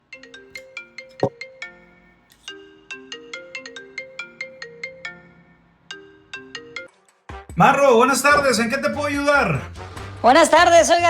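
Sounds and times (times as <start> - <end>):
mobile phone ringtone: 0.0 - 7.1.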